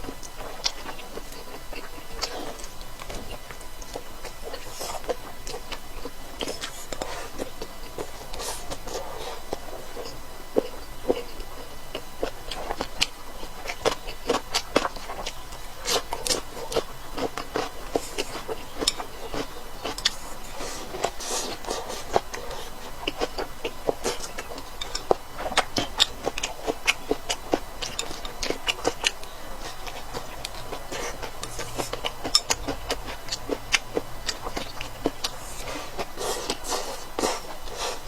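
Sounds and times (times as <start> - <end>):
person chewing crunchy food: 0.0 - 38.0.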